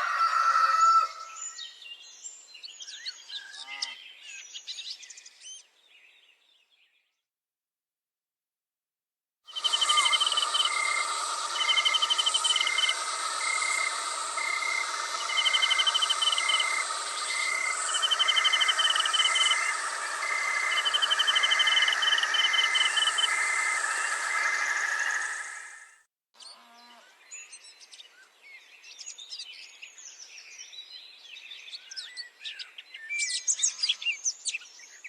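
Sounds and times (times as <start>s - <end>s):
insect pulsed trills: 9.5s - 26.0s
insect short chirp: 9.5s - 26.0s
insects buzzing chorus: 9.6s - 26.0s.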